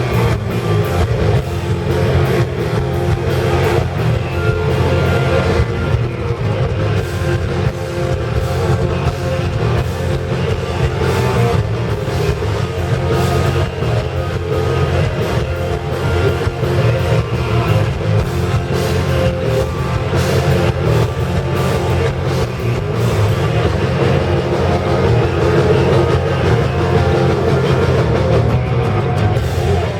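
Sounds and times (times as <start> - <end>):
heavy metal band playing live: 0.0 - 29.9.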